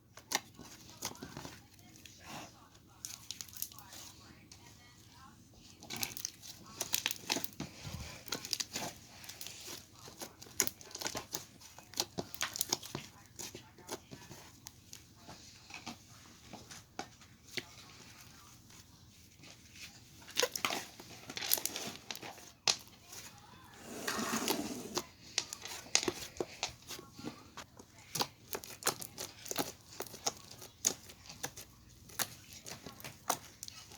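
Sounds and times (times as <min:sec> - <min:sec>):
slime squishing with sticky pops: 0:03.0 - 0:04.0, 0:05.7 - 0:16.0, 0:19.4 - 0:23.4, 0:27.7 - 0:33.9.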